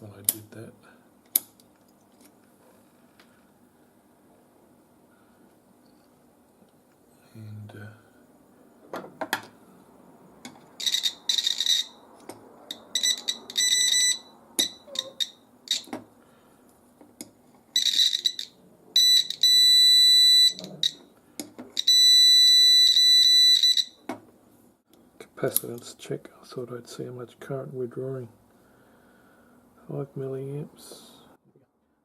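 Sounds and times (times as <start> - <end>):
multimeter buzzer beeping: 10.8 - 12.0, 12.9 - 15.9, 17.8 - 21.0, 21.8 - 24.0.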